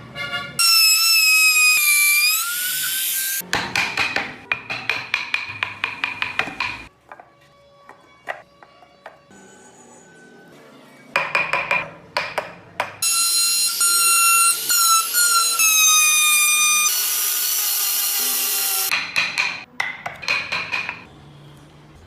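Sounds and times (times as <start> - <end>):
small power tool whine: 13.0 - 18.9.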